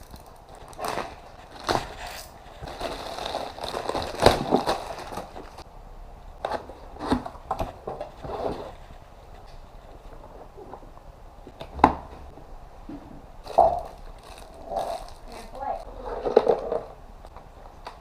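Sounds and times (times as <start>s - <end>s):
packaging rustling and crinkling: 0.0s - 5.6s, 13.4s - 16.9s.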